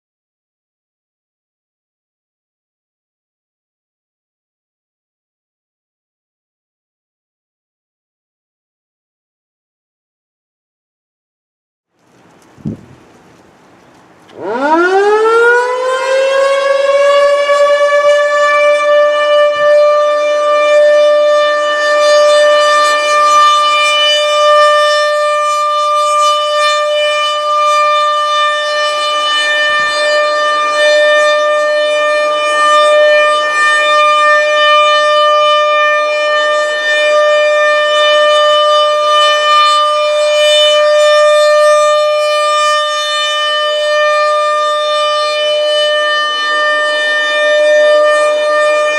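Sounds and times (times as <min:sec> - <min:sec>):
warning siren steady tone: 0:14.3 - 0:48.9.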